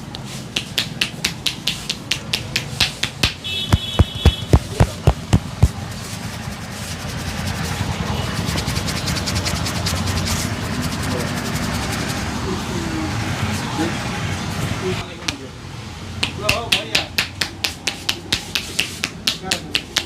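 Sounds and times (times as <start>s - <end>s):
hands slapping a head: 0.1s - 5.8s, 15.2s - 15.4s, 16.2s - 20.0s
rubbing noise: 0.2s - 12.7s, 17.4s - 20.0s.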